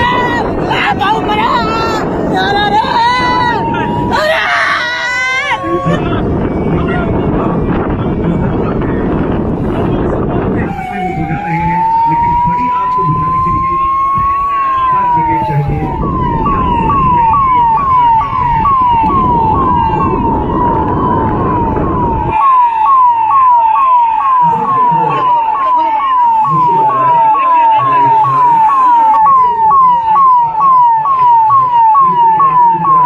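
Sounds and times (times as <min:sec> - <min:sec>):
loud low rumble: 0:00.0 - 0:22.4
fast electronic siren: 0:00.0 - 0:33.0.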